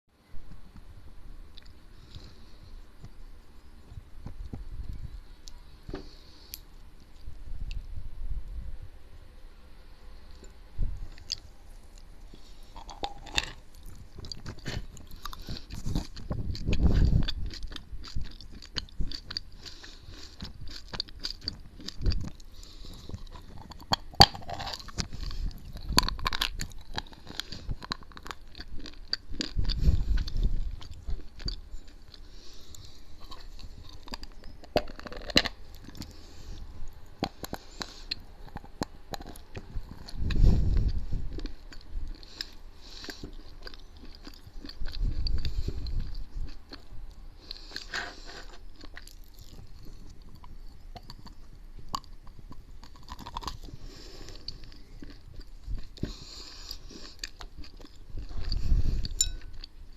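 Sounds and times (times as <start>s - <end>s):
chalk being bitten and chewed: 11.1s - 59.9s
loud breathing: 22.5s - 23.7s, 53.7s - 54.8s.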